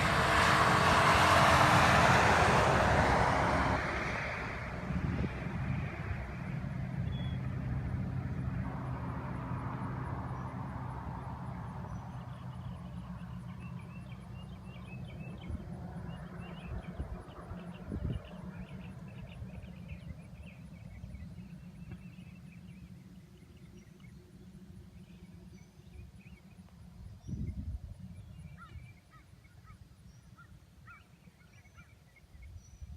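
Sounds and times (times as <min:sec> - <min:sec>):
truck diesel engine: 0:00.0 - 0:23.4
road noise: 0:00.0 - 0:32.9
crickets chirping: 0:01.4 - 0:32.7.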